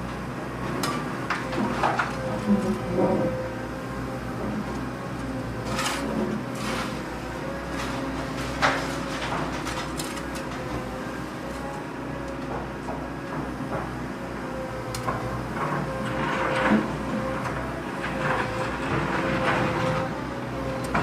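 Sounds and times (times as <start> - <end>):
excavator engine whining: 0.0 - 21.0
bucket scraping soil: 5.7 - 7.1.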